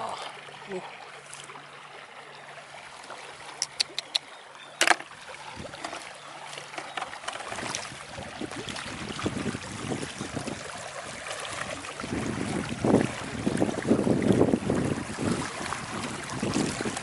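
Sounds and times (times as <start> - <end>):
flowing water: 0.0 - 17.0
small splashes and clicks: 1.2 - 1.6, 2.9 - 8.0.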